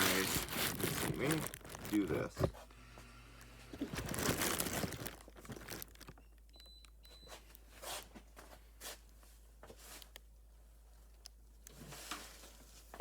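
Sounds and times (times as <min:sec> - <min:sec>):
wire crinkling and rustling: 0:00.0 - 0:02.7, 0:03.4 - 0:06.5.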